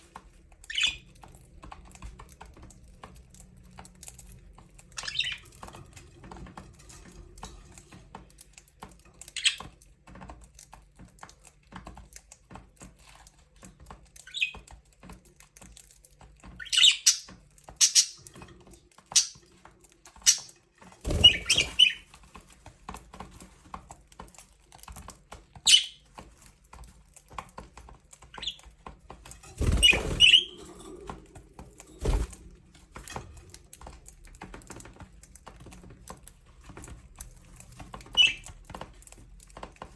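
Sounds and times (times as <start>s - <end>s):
small clicks and taps: 0.0s - 21.0s, 22.0s - 29.6s, 32.6s - 39.9s
budgerigars chirping: 0.7s - 1.0s, 5.0s - 5.4s, 25.7s - 26.0s, 29.8s - 30.6s, 38.1s - 38.5s.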